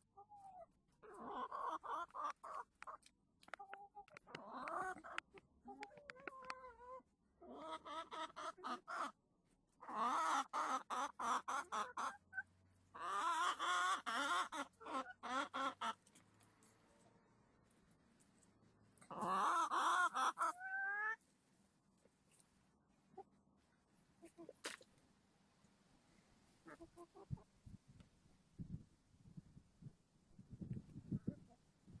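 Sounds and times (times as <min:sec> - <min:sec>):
chickens clucking and cackling: 0:00.0 - 0:16.6, 0:19.0 - 0:21.3, 0:23.0 - 0:23.4, 0:24.0 - 0:24.9, 0:26.5 - 0:27.8.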